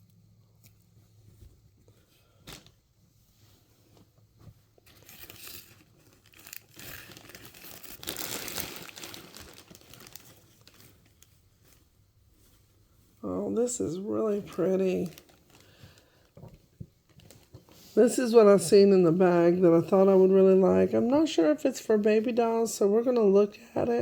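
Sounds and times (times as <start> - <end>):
bag crinkling: 4.8 - 11.8, 13.7 - 18.0.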